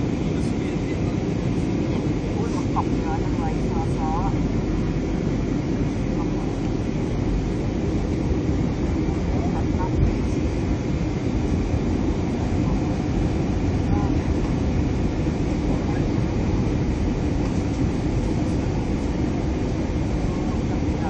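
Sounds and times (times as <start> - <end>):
airplane cabin engine noise: 0.0 - 21.0.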